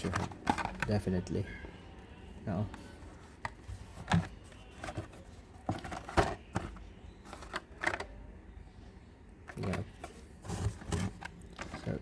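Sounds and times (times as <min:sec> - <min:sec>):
plastic packs clacking together: 0:00.0 - 0:01.1.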